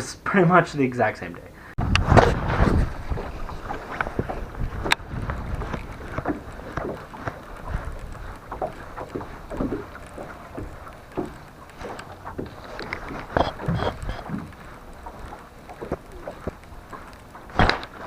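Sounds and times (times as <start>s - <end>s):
wind buffeting microphone: 1.8s - 18.0s
knocks from handling fishing gear: 17.5s - 18.0s.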